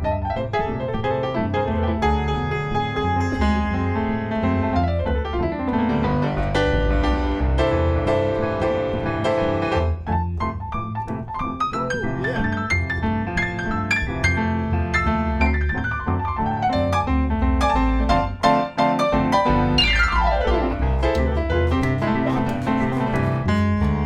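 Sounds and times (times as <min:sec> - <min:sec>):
jazz piano: 0:00.0 - 0:24.0.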